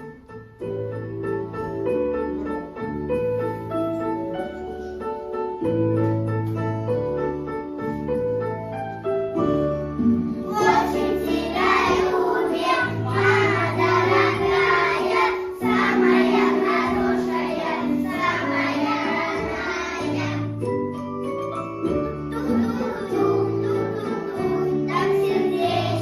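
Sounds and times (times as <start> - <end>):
keyboard playing: 0.0 - 26.0
children singing: 10.5 - 20.7, 22.2 - 26.0.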